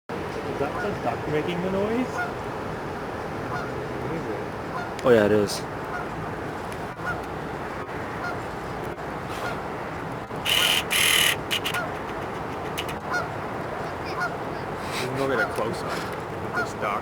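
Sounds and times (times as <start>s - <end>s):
duck calling: 10.4s - 13.3s.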